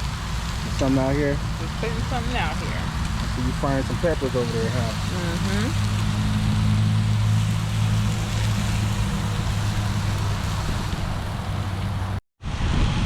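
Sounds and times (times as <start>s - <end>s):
peppers sizzling on grill: 0.0s - 12.2s
low engine hum: 0.0s - 13.0s.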